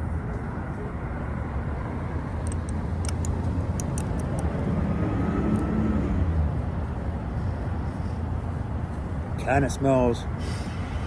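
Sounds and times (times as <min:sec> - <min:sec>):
light sharp clicks: 0:02.4 - 0:04.6.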